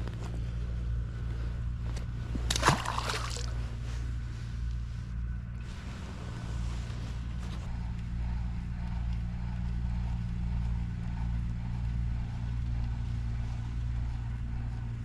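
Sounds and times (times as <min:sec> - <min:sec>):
low machine hum: 0:00.0 - 0:15.0
water splash: 0:02.4 - 0:03.6.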